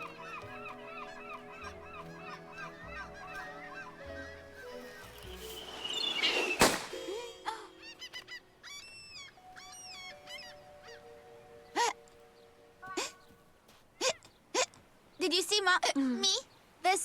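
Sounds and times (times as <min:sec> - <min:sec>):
cartoon birds squawking: 0:00.0 - 0:11.1
sustained music tones: 0:00.0 - 0:12.8
rising whoosh: 0:05.0 - 0:07.8
sharp loud crash: 0:05.4 - 0:07.5.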